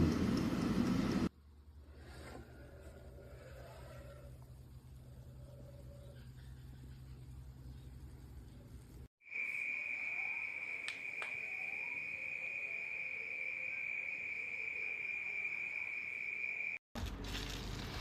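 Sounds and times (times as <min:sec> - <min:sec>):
steady high-pitched tone: 0:09.2 - 0:16.8.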